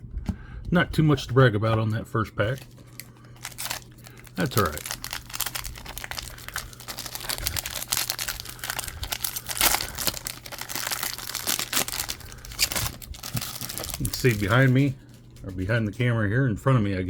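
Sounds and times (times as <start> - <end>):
foil wrapper crinkling and tearing: 2.4 - 16.0.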